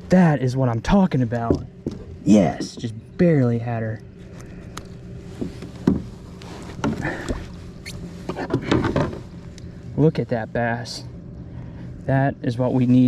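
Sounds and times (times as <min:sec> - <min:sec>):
steady low hum: 0:00.0 - 0:13.0
knocks and rattles in kayak: 0:05.4 - 0:06.1, 0:08.3 - 0:09.3.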